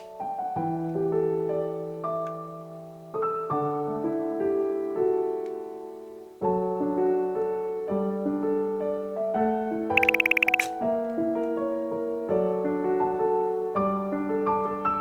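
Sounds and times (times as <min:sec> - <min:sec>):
gentle piano chords: 0:00.0 - 0:15.0.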